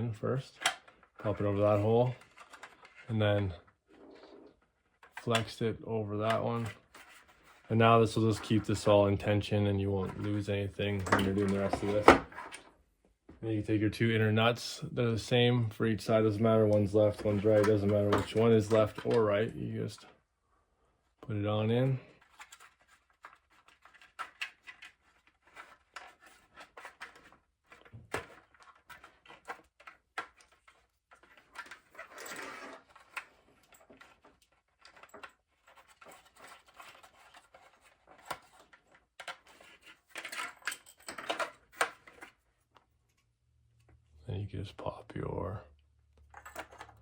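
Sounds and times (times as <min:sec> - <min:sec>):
small parts clicking and scraping: 0:02.0 - 0:03.1, 0:22.1 - 0:42.4, 0:46.2 - 0:47.0.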